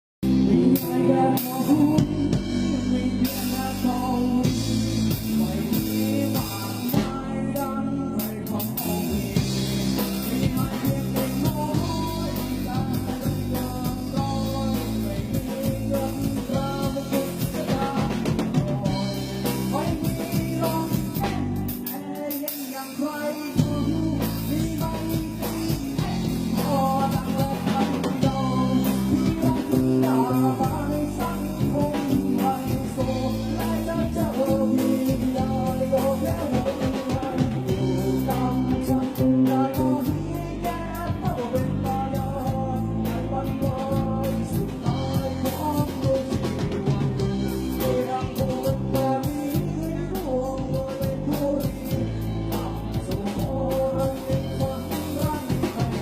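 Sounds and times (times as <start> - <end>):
bass guitar: 0.0 - 56.0
drum kit: 0.2 - 56.0
guitar: 0.2 - 56.0
person singing: 0.2 - 56.0.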